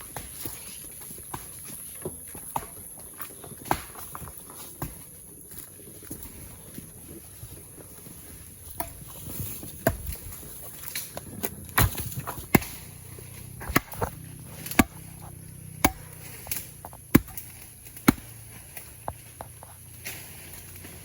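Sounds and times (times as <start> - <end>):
wood being chopped: 3.6 - 4.2, 8.7 - 13.0, 13.6 - 19.4.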